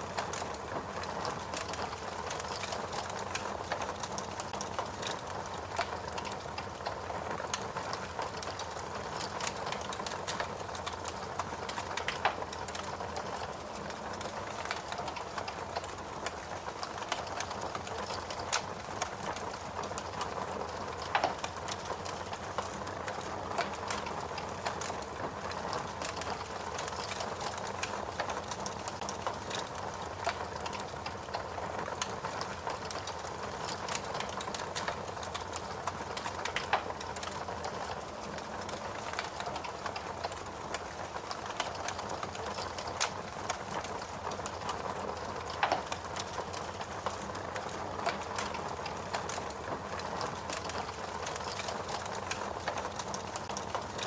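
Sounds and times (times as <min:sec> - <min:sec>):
fire crackling: 0:00.0 - 0:54.0.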